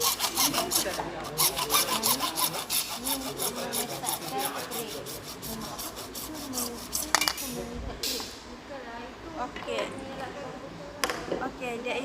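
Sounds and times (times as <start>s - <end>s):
handsaw cutting plastic pipe: 0.0s - 7.6s.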